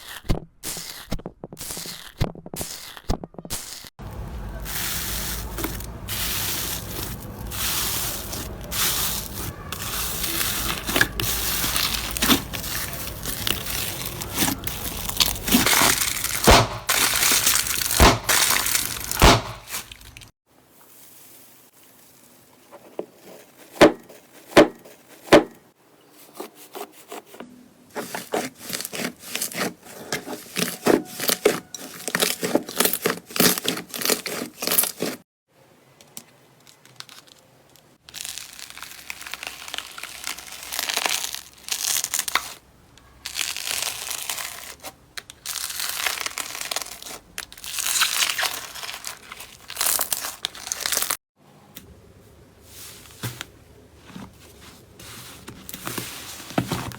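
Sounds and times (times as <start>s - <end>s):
slime crinkling and rustling: 0.0s - 25.3s, 27.9s - 35.2s, 36.6s - 51.2s, 52.6s - 56.9s
slime popping and crackling: 7.2s - 20.3s, 38.1s - 42.6s, 43.2s - 51.2s.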